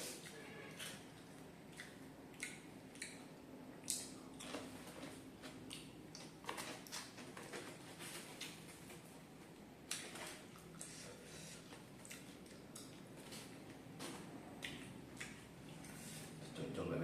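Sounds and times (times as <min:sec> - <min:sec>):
wet chewing clicks: 0:00.2 - 0:04.7, 0:05.6 - 0:06.4, 0:11.9 - 0:13.6, 0:14.6 - 0:16.0.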